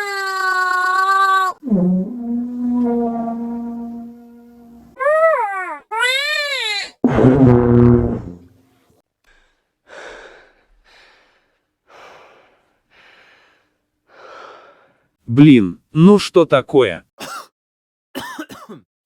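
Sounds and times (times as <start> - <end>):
low buzzing blast: 7.0 - 8.5.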